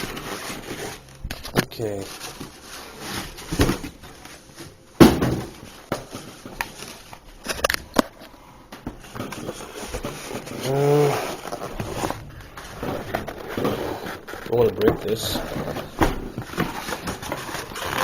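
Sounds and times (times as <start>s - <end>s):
person humming: 10.6s - 11.4s.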